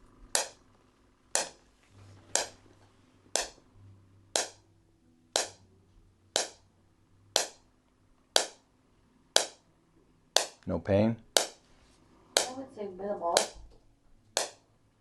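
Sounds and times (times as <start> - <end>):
shockwave applicator snapping: 0.3 - 0.6, 1.3 - 1.6, 2.3 - 2.6, 3.3 - 3.6, 4.3 - 4.6, 5.4 - 5.6, 6.4 - 6.6, 7.4 - 7.6, 8.3 - 8.6, 9.4 - 9.6, 10.4 - 10.7, 11.3 - 11.6, 14.3 - 14.6.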